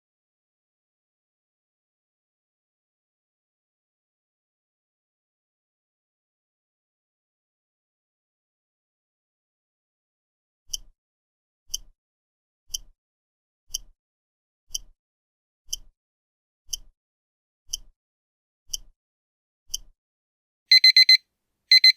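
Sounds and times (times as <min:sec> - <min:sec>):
countdown timer ticking: 0:20.7 - 0:21.9.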